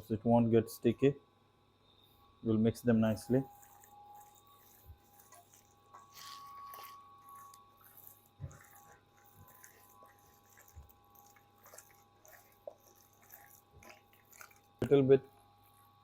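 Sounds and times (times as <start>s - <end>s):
hands squelching raw chicken: 3.5s - 15.1s.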